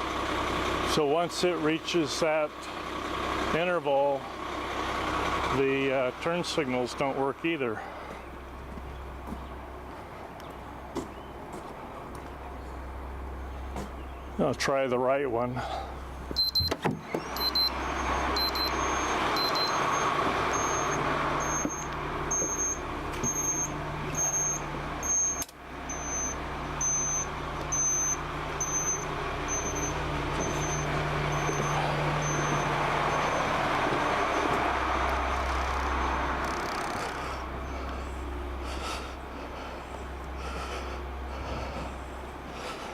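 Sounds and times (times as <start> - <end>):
low vehicle rumble: 0.0 - 42.9
high indicator beep: 16.4 - 33.5.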